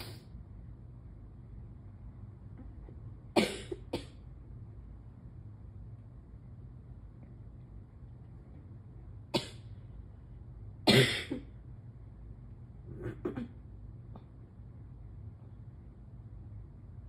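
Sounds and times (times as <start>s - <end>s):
person sneezing: 0.0s - 0.3s, 10.9s - 11.6s.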